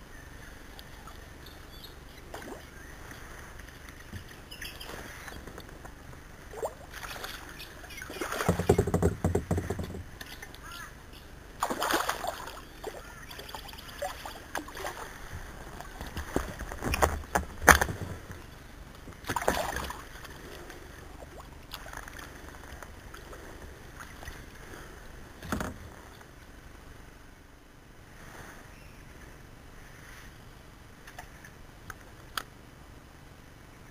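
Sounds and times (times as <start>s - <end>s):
water swishing: 6.3s - 8.8s, 11.6s - 17.4s, 19.2s - 26.2s
sharp knocks on kayak hull: 8.4s - 10.1s.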